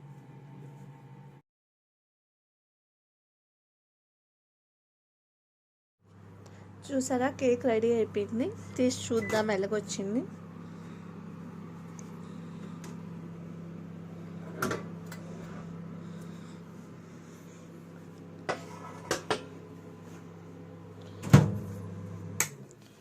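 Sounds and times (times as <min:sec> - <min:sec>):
microwave oven humming: 0:00.0 - 0:01.4, 0:06.1 - 0:23.0.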